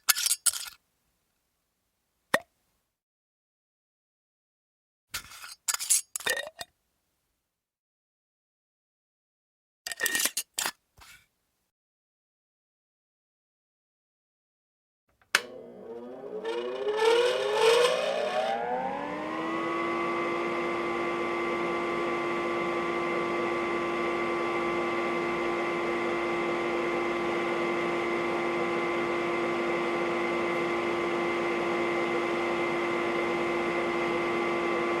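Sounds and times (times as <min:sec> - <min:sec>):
electric motor whine: 0:15.4 - 0:35.0.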